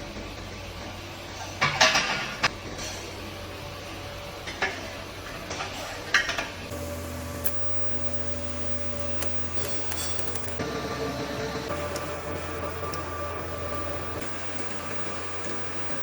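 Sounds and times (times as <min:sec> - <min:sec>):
steady machine hum: 0:06.6 - 0:16.0
louder hum with held tone: 0:06.7 - 0:16.0.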